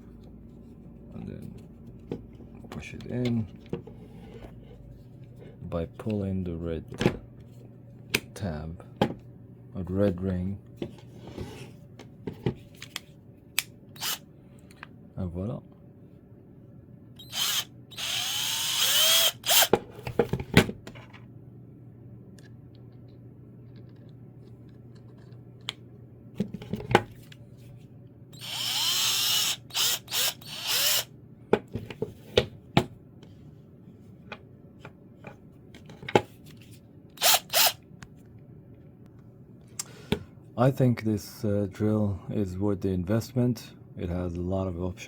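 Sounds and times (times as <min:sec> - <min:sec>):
cordless drill spinning: 0:14.0 - 0:14.2, 0:17.2 - 0:19.7, 0:28.4 - 0:31.1, 0:37.2 - 0:37.8.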